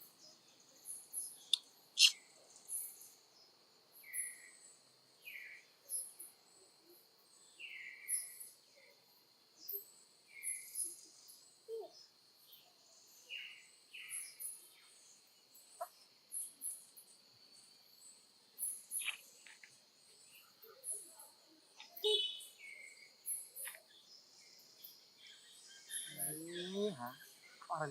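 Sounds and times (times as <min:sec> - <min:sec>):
insects droning: 0:00.0 - 0:27.9
brief calls: 0:01.5 - 0:02.2.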